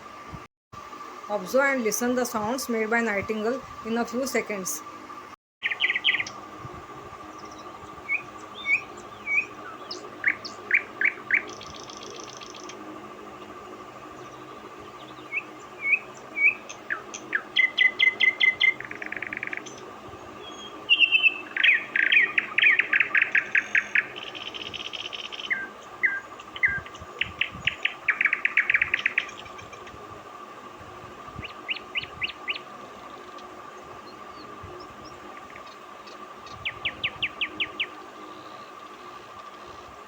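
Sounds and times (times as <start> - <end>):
nightingale singing: 5.6 - 6.4, 7.3 - 12.8, 14.1 - 19.8, 20.4 - 29.9, 31.4 - 32.7, 34.0 - 39.7.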